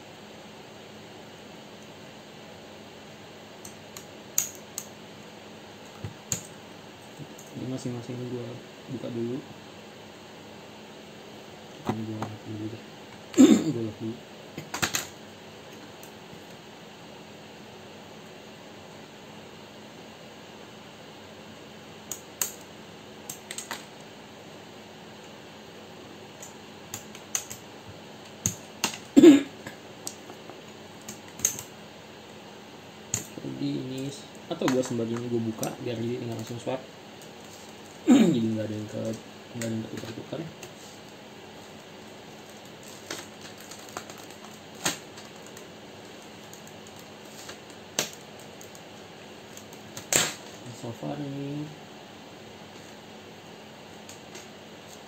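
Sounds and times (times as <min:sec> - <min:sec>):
keycaps clattering: 0:26.4 - 0:27.6, 0:28.3 - 0:31.7, 0:42.3 - 0:48.9.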